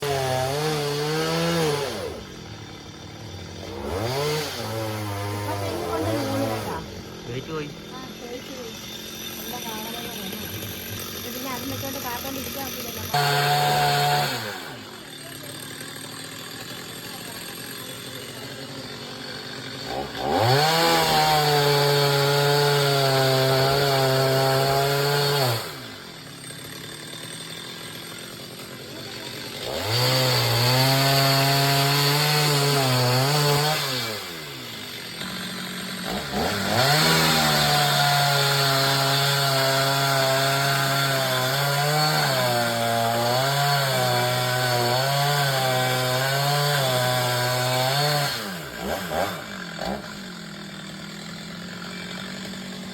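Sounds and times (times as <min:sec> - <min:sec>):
chainsaw revving and cutting wood: 0:00.0 - 0:52.9.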